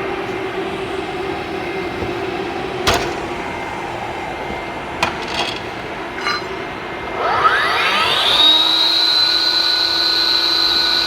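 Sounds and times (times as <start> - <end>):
steady background hum: 0.0 - 9.2
sharp clicks and knocks: 5.0 - 6.6.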